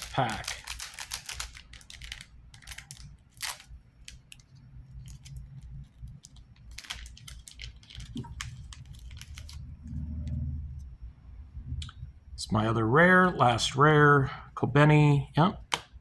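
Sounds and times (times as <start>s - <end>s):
foil wrapper crinkling: 0.0s - 9.9s.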